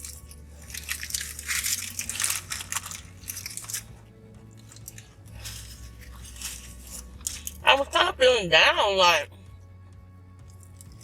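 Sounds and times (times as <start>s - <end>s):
chewing crunchy food: 0.0s - 7.6s, 10.4s - 11.0s.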